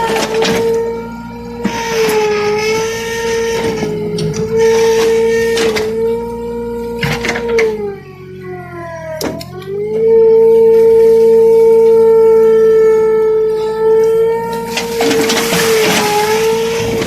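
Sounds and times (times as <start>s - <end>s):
excavator whine: 0.0s - 17.0s.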